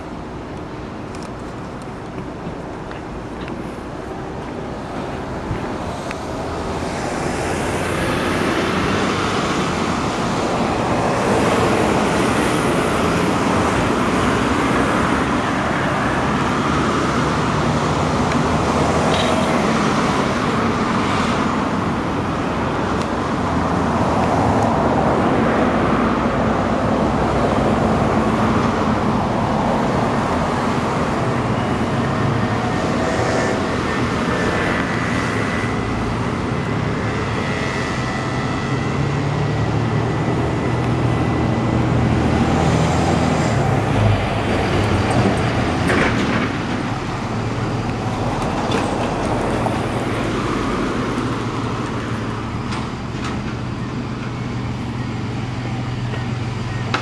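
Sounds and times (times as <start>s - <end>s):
road traffic noise: 0.0s - 57.0s.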